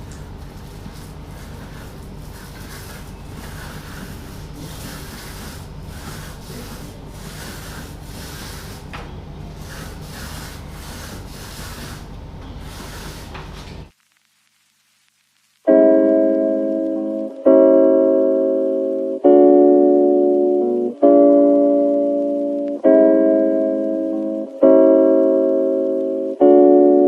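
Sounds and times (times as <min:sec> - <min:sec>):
paint brush rubbing on wall: 0:00.4 - 0:13.9.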